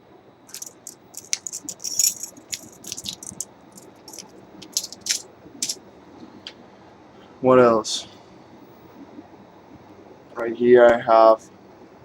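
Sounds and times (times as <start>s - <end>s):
keys jingling: 0.5s - 5.8s.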